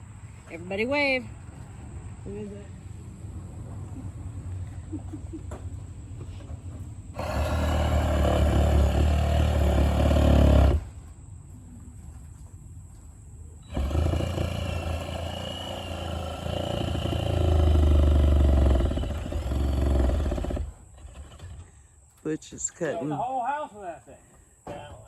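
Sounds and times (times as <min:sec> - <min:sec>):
electric power saw cutting boards: 0:07.1 - 0:11.0, 0:13.6 - 0:21.7.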